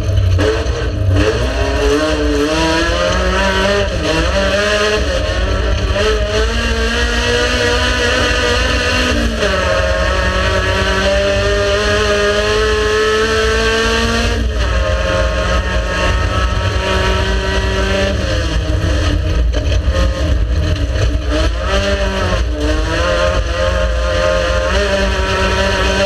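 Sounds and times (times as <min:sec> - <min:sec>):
race car engine accelerating: 0:00.0 - 0:26.0.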